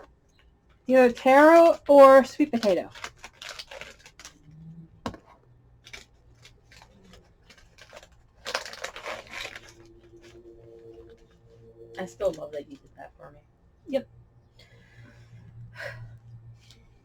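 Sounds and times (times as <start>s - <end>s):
plastic snack package crinkling: 1.0s - 4.5s, 5.8s - 9.9s.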